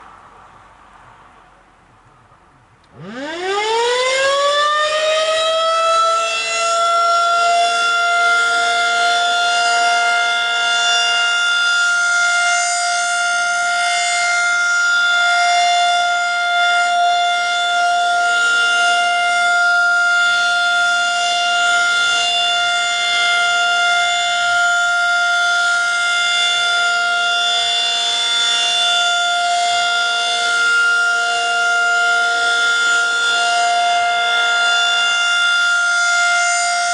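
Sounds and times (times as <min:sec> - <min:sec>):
warning siren winding up: 0:02.8 - 0:36.9.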